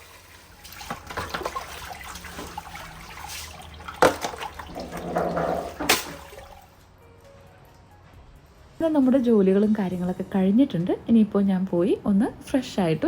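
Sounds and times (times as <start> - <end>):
water splashing off a mat: 0.5 - 6.8.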